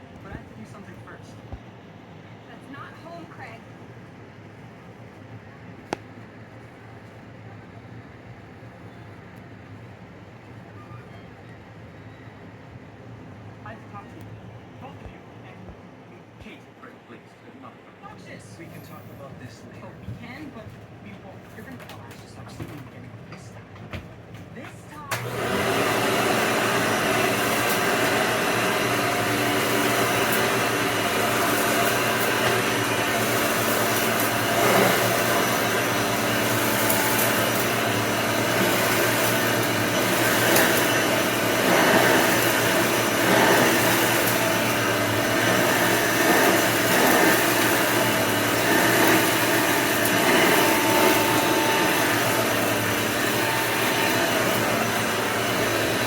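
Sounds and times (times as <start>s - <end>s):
vacuum cleaner running: 25.0s - 56.0s.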